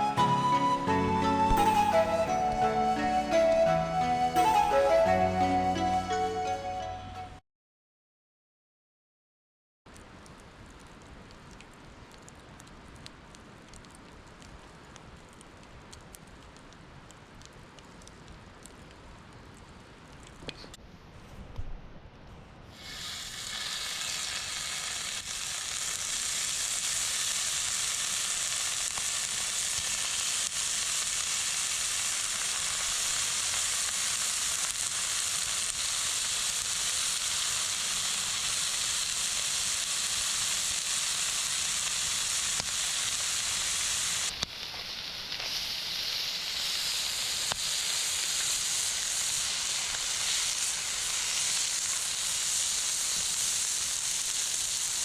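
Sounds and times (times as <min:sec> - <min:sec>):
meat sizzling on a grill: 0:22.7 - 0:55.0.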